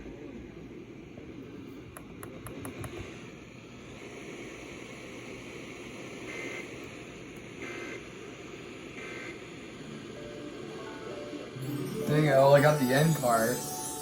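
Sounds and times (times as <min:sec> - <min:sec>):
radio static hiss: 0:03.9 - 0:10.6.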